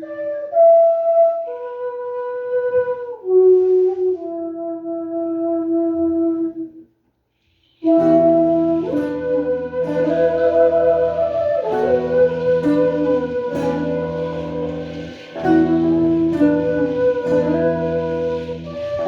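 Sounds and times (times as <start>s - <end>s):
wind instrument long notes: 0.0s - 6.8s, 7.8s - 19.0s
plucked strings: 7.9s - 19.0s.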